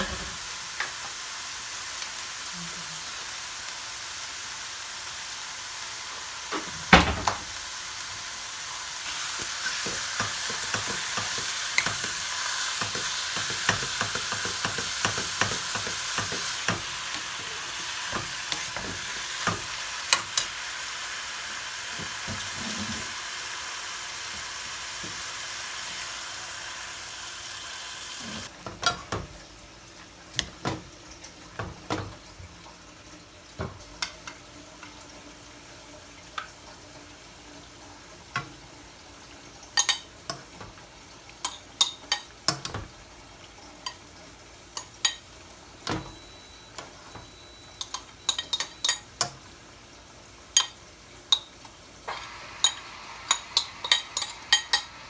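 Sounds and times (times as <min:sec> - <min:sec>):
food sizzling in a pan: 0:00.0 - 0:55.0
utensils clinking against pots: 0:09.1 - 0:20.6, 0:39.8 - 0:40.8, 0:44.8 - 0:45.2, 0:45.8 - 0:49.4, 0:50.6 - 0:55.0.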